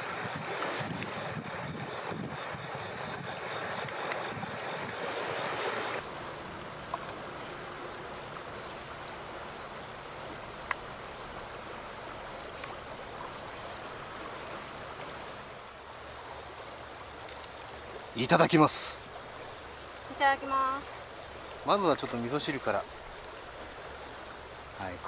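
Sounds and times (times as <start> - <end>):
steady outdoor rushing noise: 0.0 - 15.7
faint sharp clicks: 0.6 - 2.0, 3.8 - 5.0, 10.6 - 10.9, 12.6 - 12.8, 17.2 - 17.6, 22.9 - 23.4.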